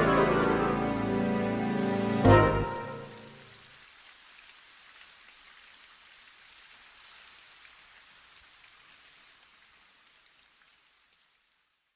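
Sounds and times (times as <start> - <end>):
rain pattering: 1.4 - 11.9.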